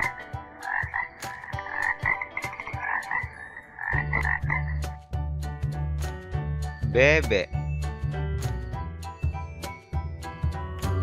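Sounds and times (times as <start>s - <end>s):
frog croaking: 0.6s - 4.8s.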